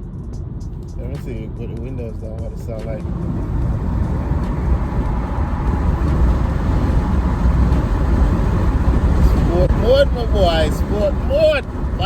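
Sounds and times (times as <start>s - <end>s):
road noise: 0.0s - 12.0s
car engine accelerating: 0.6s - 12.0s
wind noise: 3.0s - 12.0s.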